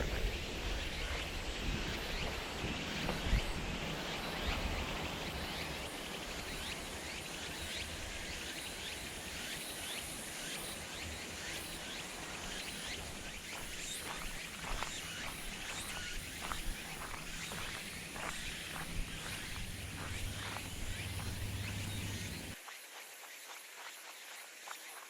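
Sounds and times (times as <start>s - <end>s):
steady background hiss: 0.0s - 22.6s
faint high chirps: 11.4s - 22.6s.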